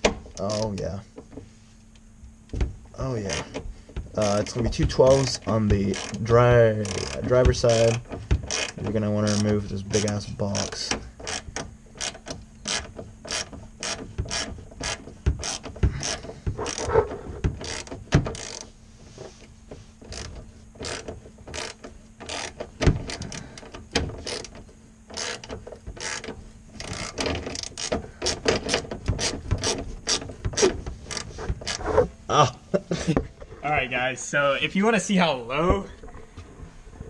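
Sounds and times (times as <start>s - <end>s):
ratchet wrench clicking: 5.1s - 16.9s, 17.6s - 18.7s, 20.1s - 23.4s, 24.2s - 24.5s, 25.1s - 30.2s.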